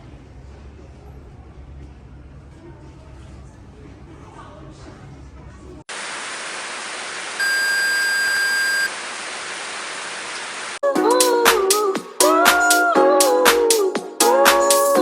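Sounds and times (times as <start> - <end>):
static hiss: 5.9 - 10.8
steady high beep: 7.4 - 8.9
music with a beat: 10.8 - 15.0.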